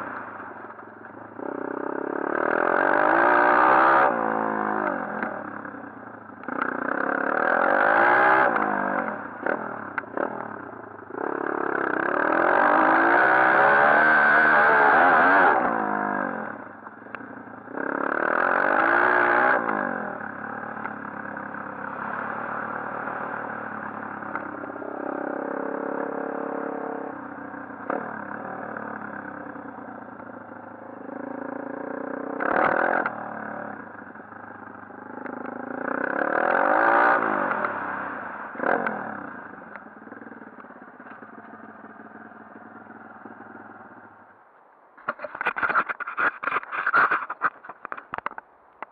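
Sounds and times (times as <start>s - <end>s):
pit bike engine revving: 1.4s - 5.7s, 6.4s - 16.6s, 17.7s - 44.0s
sharp clatters: 45.0s - 48.9s.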